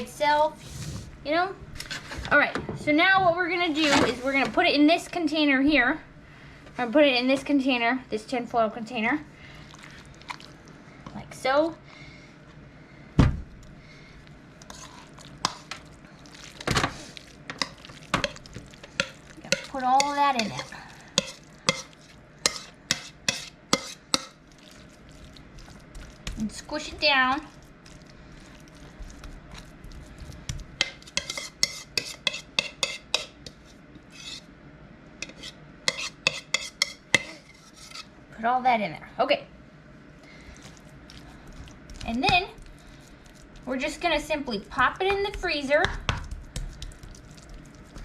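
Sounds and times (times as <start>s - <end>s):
heavy thump: 13.2s - 13.5s
spoon scraping and tapping a dish: 17.5s - 24.4s, 30.8s - 33.6s, 35.2s - 38.0s.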